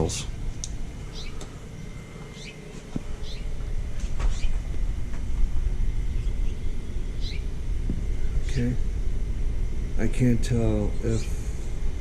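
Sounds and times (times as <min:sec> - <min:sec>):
songbirds chirping: 0:00.0 - 0:12.0
steady low rumble: 0:00.0 - 0:12.0.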